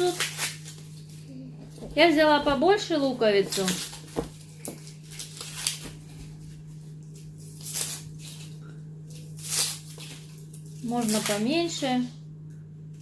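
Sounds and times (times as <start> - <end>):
onion skin crackling: 0.0 - 1.4, 2.9 - 11.8.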